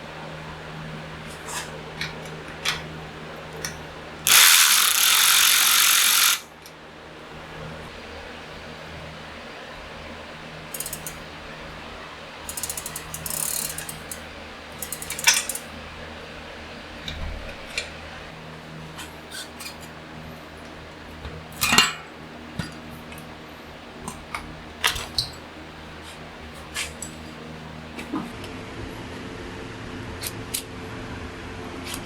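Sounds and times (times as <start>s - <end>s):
tools and bike parts clinking: 4.3s - 6.4s, 10.8s - 11.2s, 12.5s - 14.2s, 14.8s - 15.7s
rapid ratcheting clicks: 4.3s - 6.5s, 10.8s - 11.2s, 12.5s - 14.2s, 14.8s - 15.7s.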